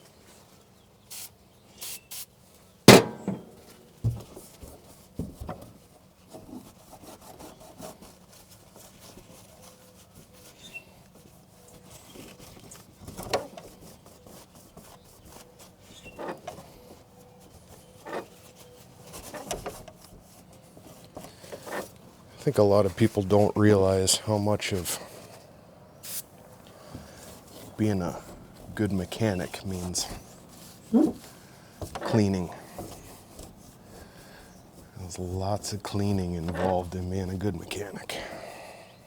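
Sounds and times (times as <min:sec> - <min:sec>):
rubbing and scraping metal surface: 0:02.9 - 0:03.7, 0:05.8 - 0:22.0, 0:27.2 - 0:37.9
knocks: 0:02.9 - 0:04.3.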